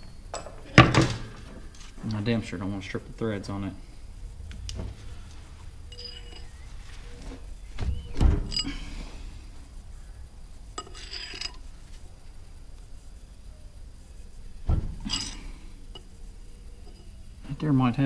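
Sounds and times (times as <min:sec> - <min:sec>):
metal tools clinking and ringing: 0:05.9 - 0:06.7, 0:08.4 - 0:09.2, 0:10.8 - 0:11.6, 0:15.0 - 0:16.1, 0:16.8 - 0:17.2.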